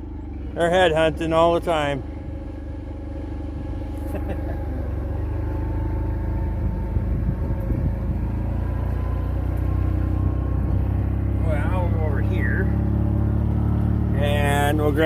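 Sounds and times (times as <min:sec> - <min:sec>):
vehicle engine humming: 0:00.0 - 0:15.0.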